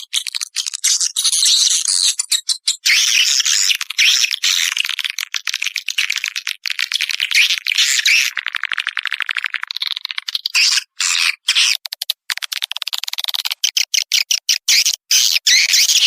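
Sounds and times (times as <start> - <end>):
swiftlets twittering and chirping: 0.0 - 4.7, 7.2 - 8.4.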